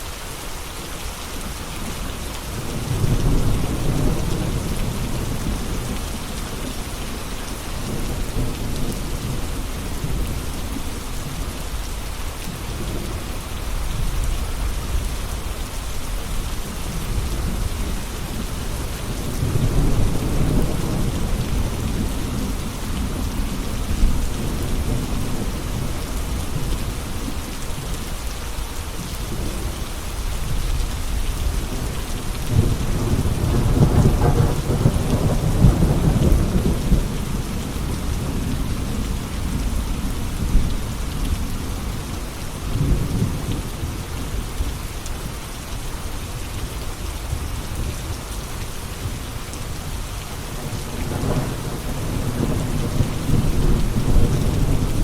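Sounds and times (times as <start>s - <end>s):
steady rain: 0.0s - 55.0s
rolling thunder: 31.7s - 41.8s, 50.6s - 55.0s.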